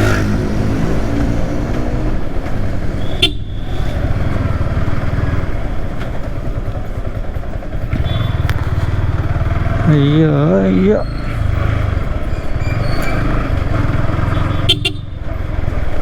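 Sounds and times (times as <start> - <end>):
motorcycle engine running: 0.0 - 16.0
wind and road noise: 0.0 - 16.0.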